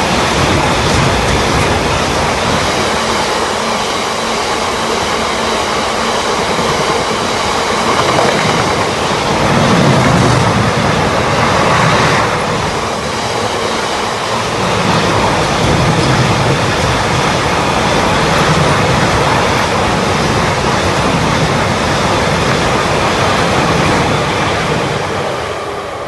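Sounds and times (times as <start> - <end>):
freight train wheels on rails: 0.0 - 26.0.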